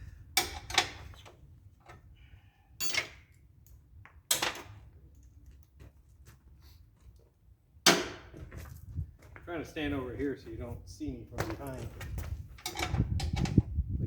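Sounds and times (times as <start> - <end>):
metal tools clinking and knocking: 2.8 - 3.4, 12.6 - 13.6.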